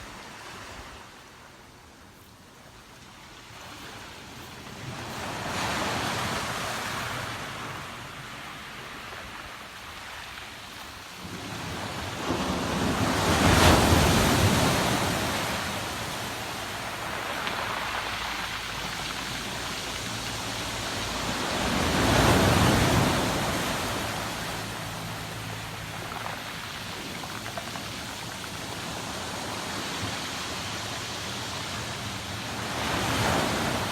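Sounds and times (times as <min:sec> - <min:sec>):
waves breaking on shore: 0:00.0 - 0:33.9.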